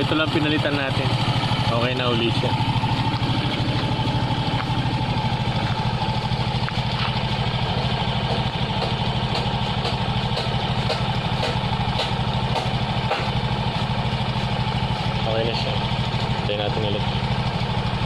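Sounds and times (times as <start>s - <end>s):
motorcycle engine idling: 0.0s - 18.0s.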